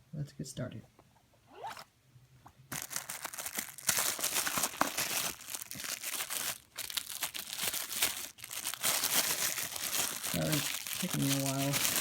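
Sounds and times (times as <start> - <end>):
packaging crinkling: 2.7 - 12.0
packaging tearing: 2.7 - 12.0.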